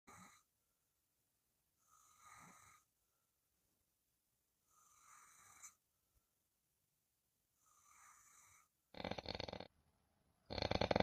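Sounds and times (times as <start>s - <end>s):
faint snoring: 0.1s - 0.5s, 1.8s - 3.0s, 4.6s - 5.8s, 7.6s - 9.7s, 10.5s - 11.0s.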